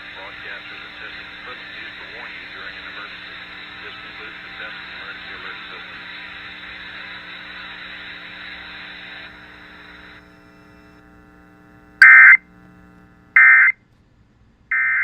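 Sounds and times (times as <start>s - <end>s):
radio static hiss: 0.0s - 13.7s
digital data tone bursts: 12.0s - 12.4s.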